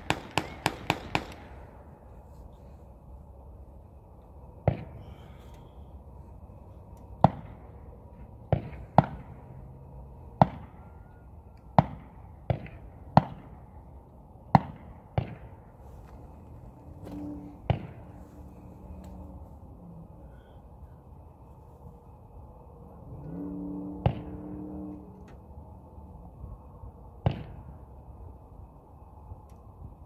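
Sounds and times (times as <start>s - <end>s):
sharp bangs with ringing tail: 0.0s - 1.7s.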